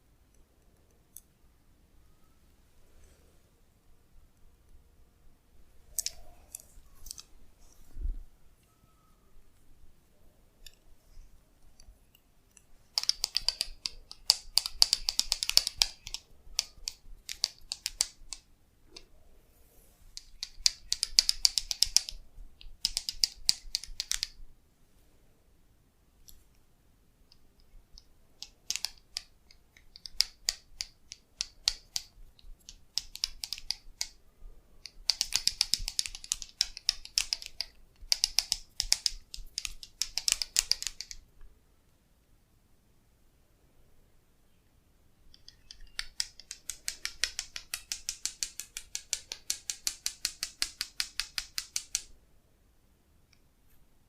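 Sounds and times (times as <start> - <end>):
fast crackling clicks from hands: 28.4 - 34.2, 35.0 - 41.2, 45.4 - 52.1.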